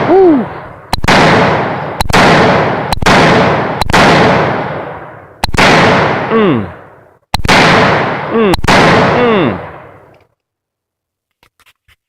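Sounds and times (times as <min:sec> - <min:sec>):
person whooping: 0:00.0 - 0:00.6
rifle shots echoing: 0:00.0 - 0:10.1.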